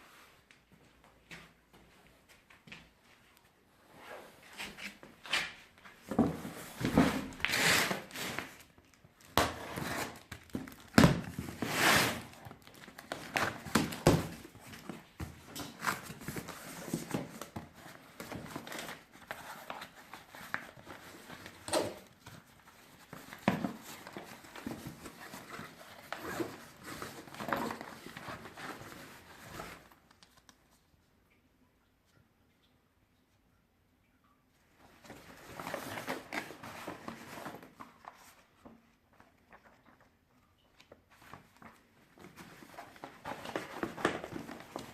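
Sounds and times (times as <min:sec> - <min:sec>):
packaging crinkling and rustling: 0:04.6 - 0:30.6, 0:35.0 - 0:40.2, 0:40.8 - 0:44.9.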